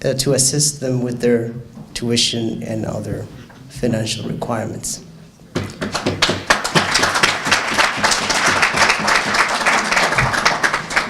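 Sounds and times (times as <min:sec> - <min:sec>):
audience applauding: 0:05.7 - 0:11.0.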